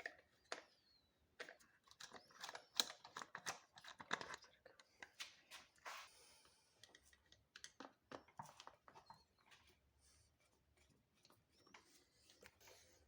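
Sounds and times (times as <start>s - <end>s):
faint clicks and taps: 6.8s - 9.8s.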